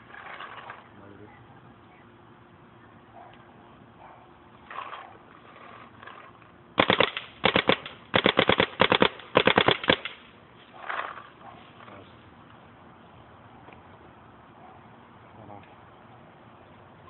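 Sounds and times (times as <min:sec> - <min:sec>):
paintball marker firing: 0:06.8 - 0:10.2.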